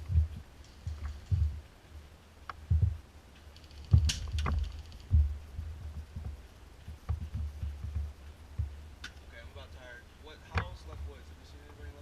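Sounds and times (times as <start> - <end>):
sharp clicks: 2.4 - 5.3
distant airsoft gunfire rattle: 3.5 - 5.2.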